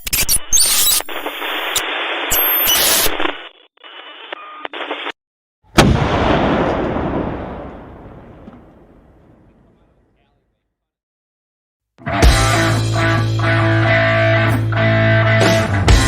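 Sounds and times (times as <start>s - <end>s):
radio-like hiss: 0.8s - 5.1s
loud boom: 5.8s - 10.1s.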